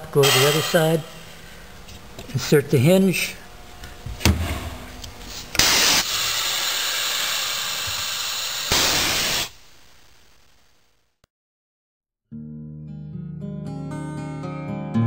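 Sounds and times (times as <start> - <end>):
air blasts: 0.0 - 1.5, 4.5 - 10.2
compressed air hissing: 0.0 - 1.7, 5.2 - 9.9.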